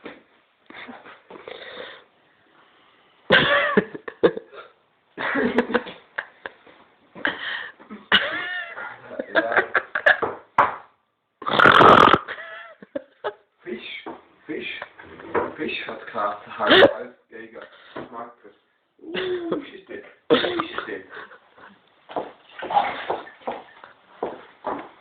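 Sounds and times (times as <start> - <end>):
throaty burp-like noises: 11.4 - 12.4.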